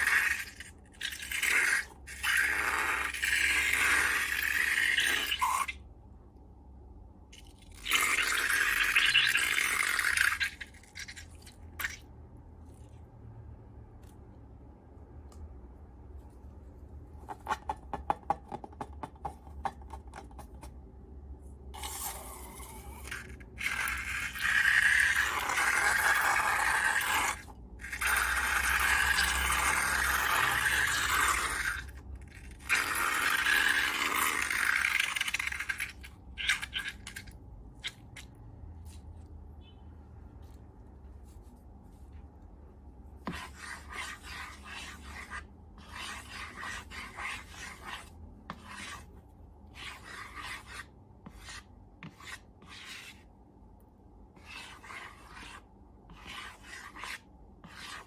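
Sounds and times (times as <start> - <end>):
scraping and rubbing: 43.2 - 53.3, 54.4 - 58.0.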